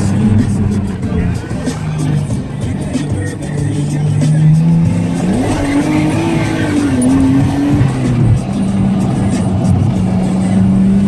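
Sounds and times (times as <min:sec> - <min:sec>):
car engine revving: 0:00.0 - 0:11.0.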